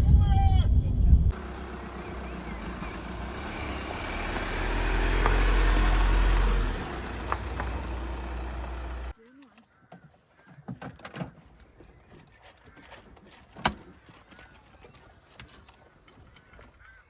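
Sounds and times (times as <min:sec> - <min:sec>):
vehicle engine passing: 0:01.3 - 0:09.1.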